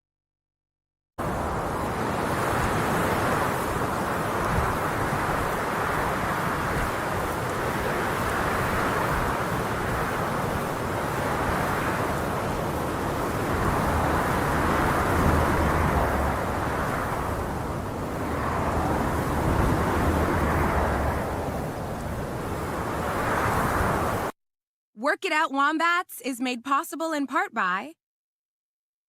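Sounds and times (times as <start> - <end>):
steady rushing noise: 1.2 - 24.3.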